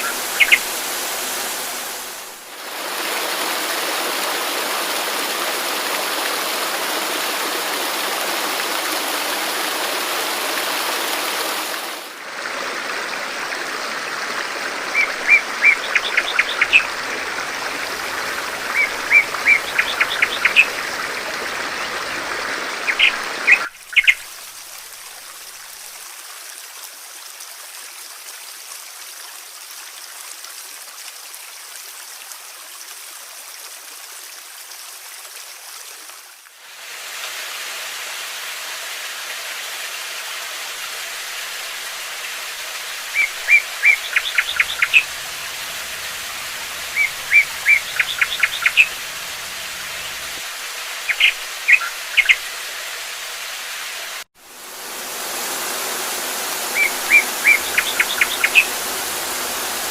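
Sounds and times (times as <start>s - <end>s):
songbirds chirping: 0.0s - 2.0s, 14.9s - 24.2s, 42.8s - 52.6s, 56.7s - 59.9s
rushing water hiss: 0.0s - 59.9s.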